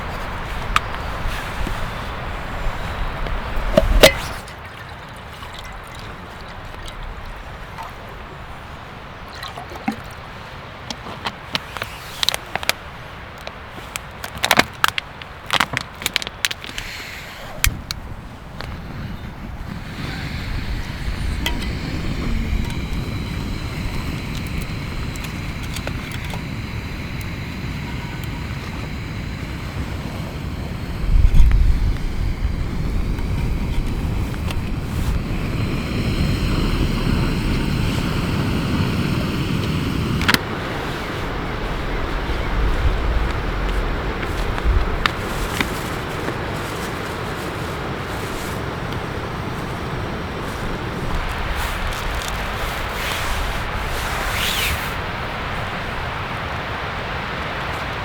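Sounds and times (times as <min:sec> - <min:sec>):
steady wind noise: 0:00.0 - 0:09.4, 0:11.8 - 0:58.0
cooking gear and packaging clicks: 0:10.9 - 0:16.9, 0:51.1 - 0:53.5.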